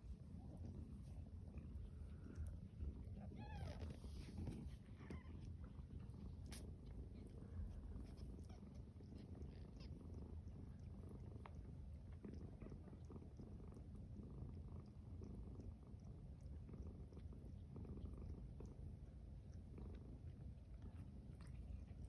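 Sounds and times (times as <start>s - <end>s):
cat purring: 0.0s - 22.0s.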